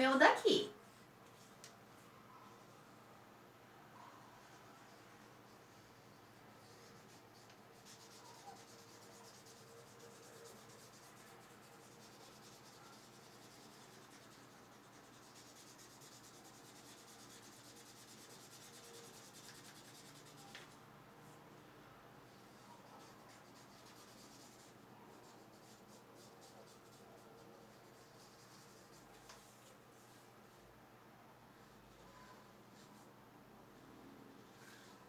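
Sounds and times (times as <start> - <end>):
marker scratching on paper: 5.2 - 20.8, 22.3 - 30.2.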